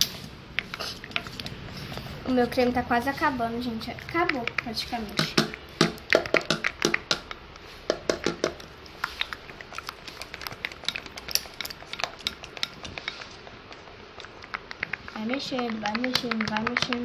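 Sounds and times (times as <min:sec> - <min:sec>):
clicks and taps of cream container: 0:14.6 - 0:17.0.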